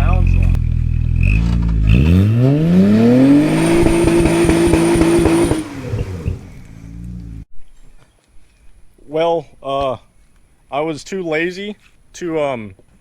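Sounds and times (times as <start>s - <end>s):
car engine revving: 0.0s - 7.5s.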